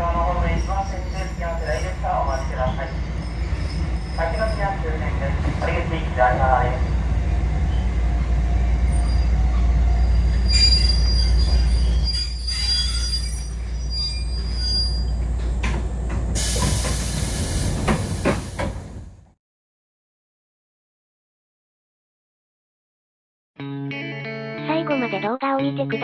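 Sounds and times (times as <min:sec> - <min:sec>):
train running rumble: 0:00.0 - 0:19.4
high wheel squeal: 0:00.5 - 0:04.7, 0:08.9 - 0:15.3
air hiss: 0:16.4 - 0:18.8.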